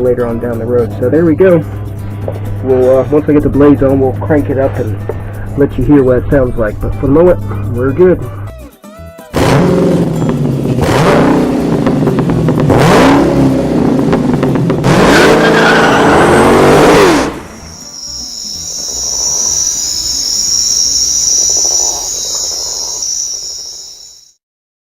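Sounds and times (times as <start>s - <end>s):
engine revving: 9.4s - 24.3s
steady high-pitched whine: 16.5s - 24.4s.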